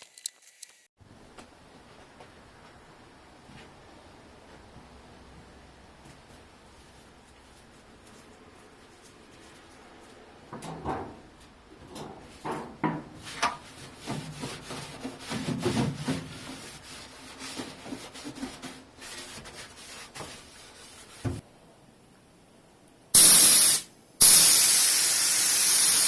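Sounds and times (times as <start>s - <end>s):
hand rubbing and scraping: 6.1s - 10.5s, 13.2s - 21.4s.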